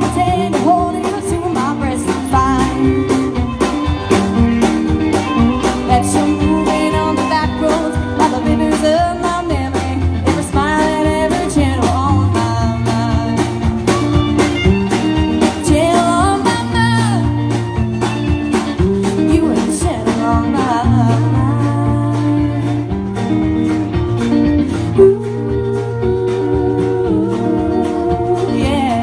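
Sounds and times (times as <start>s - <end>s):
live band playing: 0.0s - 29.0s
person singing: 5.4s - 13.7s, 19.2s - 22.9s, 25.0s - 29.0s.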